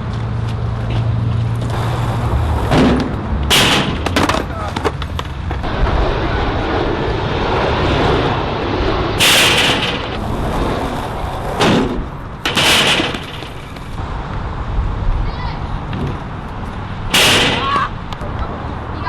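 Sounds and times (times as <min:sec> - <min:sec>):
skateboard wheels rolling on concrete: 0:00.0 - 0:19.0
skateboard hits and scrapes: 0:01.6 - 0:05.6, 0:09.2 - 0:13.9.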